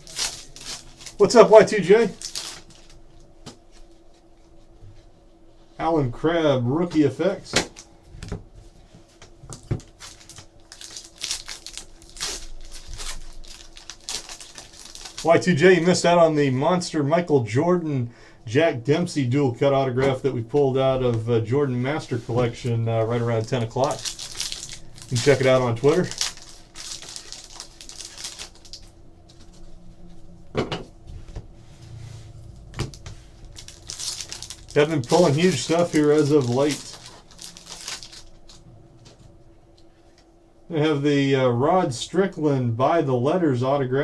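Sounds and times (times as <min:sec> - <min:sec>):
wrappers crinkling and tearing: 0:00.0 - 0:04.0, 0:09.5 - 0:16.5, 0:21.7 - 0:29.7, 0:32.5 - 0:38.6
cards being handled: 0:21.9 - 0:28.8, 0:32.6 - 0:38.5.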